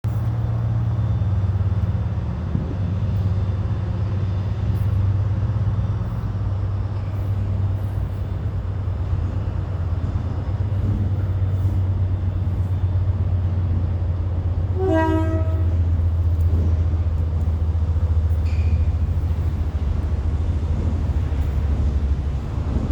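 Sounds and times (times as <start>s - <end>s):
train humming: 0.0s - 22.9s
train horn toot: 14.7s - 16.4s.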